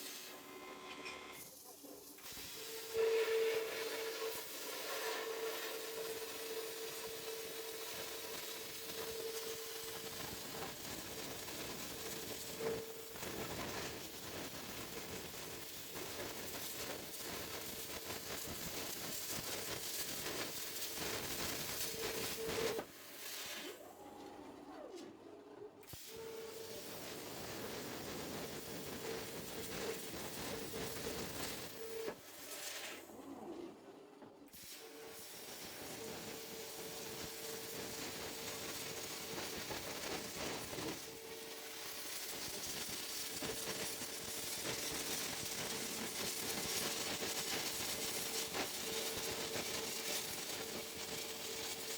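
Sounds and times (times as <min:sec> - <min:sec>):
plasma cutter hissing: 0:00.0 - 0:00.5, 0:01.3 - 0:13.3, 0:25.9 - 0:31.9.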